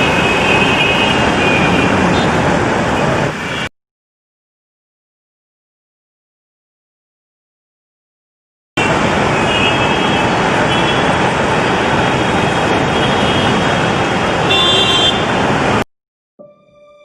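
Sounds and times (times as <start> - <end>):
vehicle horns tooting: 0.0 - 2.4, 8.8 - 11.2, 12.1 - 15.5
road traffic din: 0.0 - 3.7, 8.8 - 15.8.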